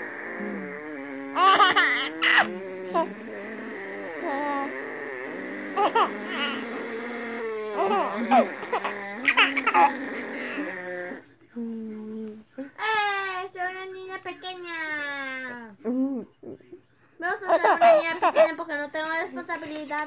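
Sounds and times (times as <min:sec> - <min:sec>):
person making drawn-out vocal noise: 0:00.0 - 0:11.2
baby laughing: 0:01.3 - 0:10.7, 0:17.5 - 0:18.6.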